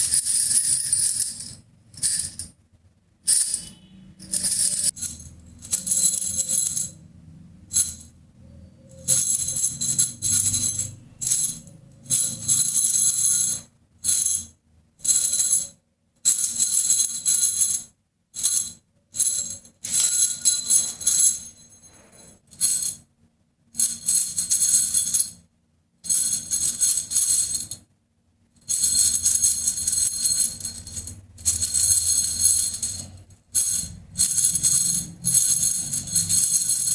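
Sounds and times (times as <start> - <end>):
bangles jingling and clinking: 0.0 - 2.5, 3.3 - 7.1, 7.7 - 8.1, 8.9 - 14.4, 18.4 - 23.0, 23.8 - 25.4, 26.1 - 27.8, 28.7 - 36.9.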